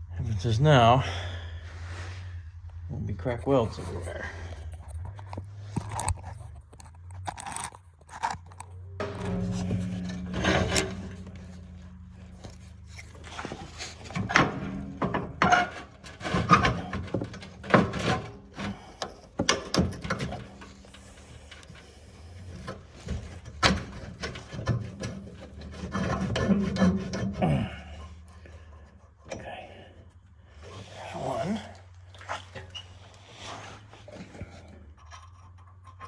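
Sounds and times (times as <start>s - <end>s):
steady low hum: 8.9s - 30.6s
metal scraping and knocking: 9.0s - 31.0s.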